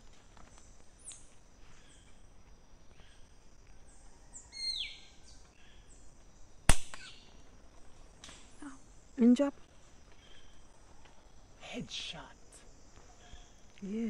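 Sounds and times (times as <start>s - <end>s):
wild birds chirping: 0.0s - 14.0s.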